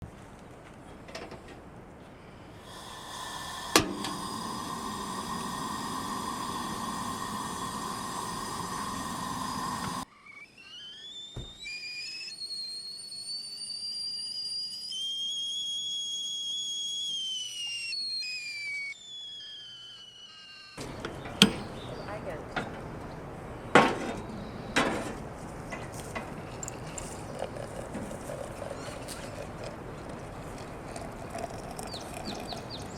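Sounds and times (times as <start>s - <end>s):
high gliding whistle: 4.9s - 21.8s.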